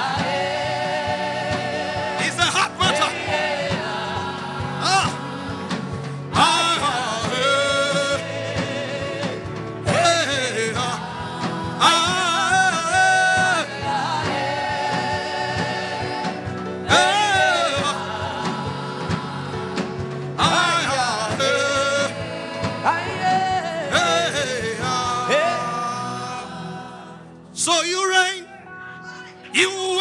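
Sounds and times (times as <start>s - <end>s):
instrumental backing with beat: 0.0s - 27.6s
person singing gospel song: 0.0s - 30.0s.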